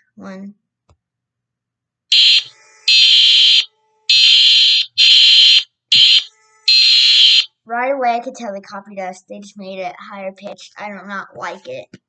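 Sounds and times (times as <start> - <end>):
high-pitched alarm blasts: 2.1 - 7.5.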